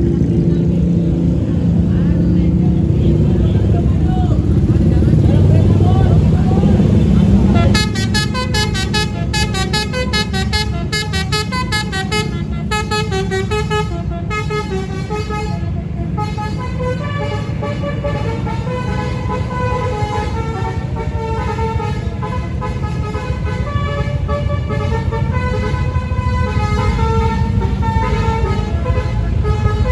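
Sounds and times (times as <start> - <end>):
bus melody horn playing tune: 7.3 - 29.9.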